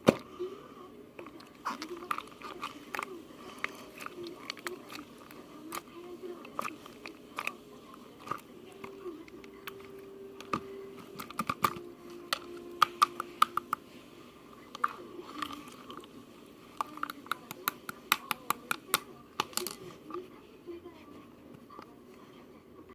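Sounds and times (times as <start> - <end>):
faint steady hum: 0.0 - 22.9
sharp clicks and crunches: 8.2 - 13.8.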